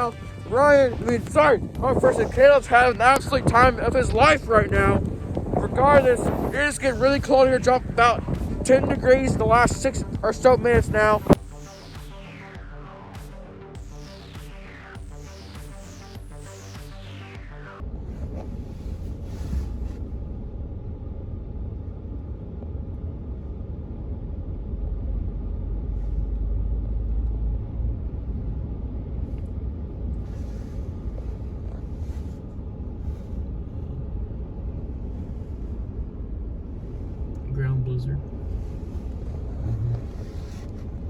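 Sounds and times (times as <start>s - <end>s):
strong wind buffeting microphone: 0.0s - 11.5s, 17.8s - 41.0s
blowing snow hissing: 30.2s - 32.4s.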